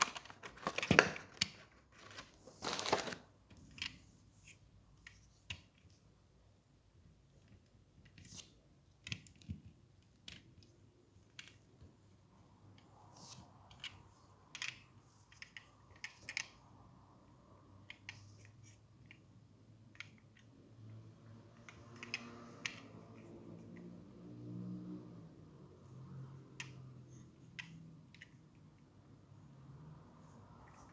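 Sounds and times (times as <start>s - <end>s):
light clicks of handling packaging: 0.0s - 3.9s.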